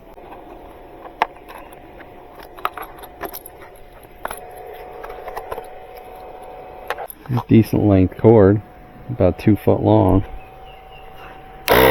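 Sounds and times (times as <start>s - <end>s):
cord and accessories rattling: 1.4s - 7.5s.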